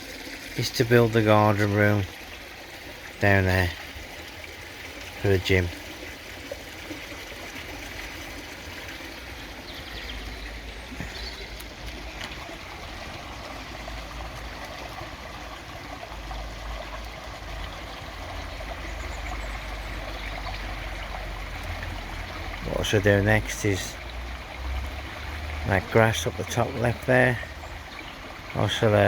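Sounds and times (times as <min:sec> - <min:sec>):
waterfall splashing into pond: 0:00.0 - 0:29.0.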